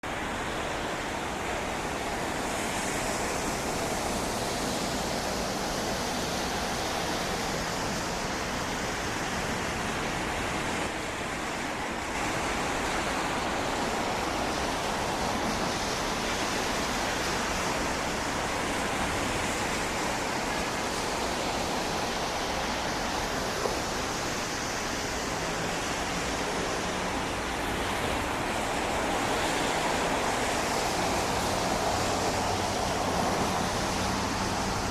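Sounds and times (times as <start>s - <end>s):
jet engines rushing: 0.0s - 34.9s.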